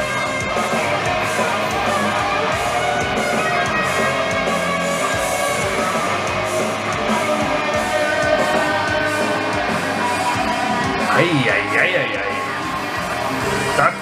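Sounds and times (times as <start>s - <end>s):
guitar music: 0.0s - 14.0s.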